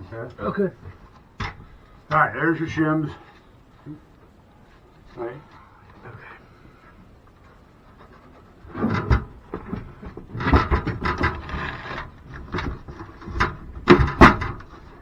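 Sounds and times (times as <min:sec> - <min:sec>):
wooden knocks and scraping: 0:00.8 - 0:02.0, 0:07.4 - 0:15.0.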